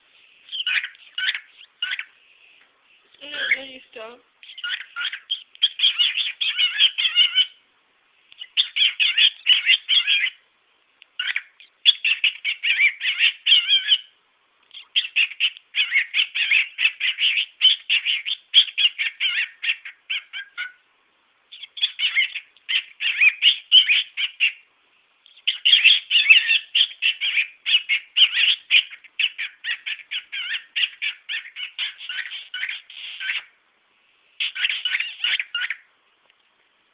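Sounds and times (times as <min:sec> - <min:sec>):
cockatiel chattering: 0:00.5 - 0:02.1, 0:03.2 - 0:03.8, 0:04.4 - 0:07.6, 0:08.4 - 0:10.4, 0:11.2 - 0:14.1, 0:14.7 - 0:20.8, 0:21.5 - 0:24.7, 0:25.3 - 0:33.6, 0:34.4 - 0:35.9.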